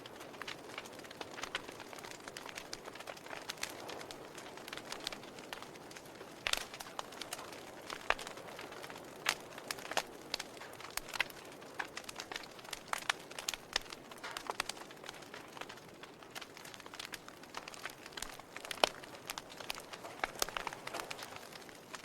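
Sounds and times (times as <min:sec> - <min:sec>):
fire crackling and popping: 0:00.0 - 0:22.0.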